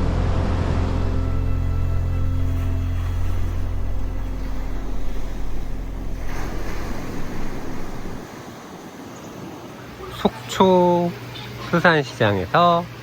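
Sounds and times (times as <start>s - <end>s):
rushing noise: 0.0s - 10.4s
engine low steady drone: 0.0s - 11.8s.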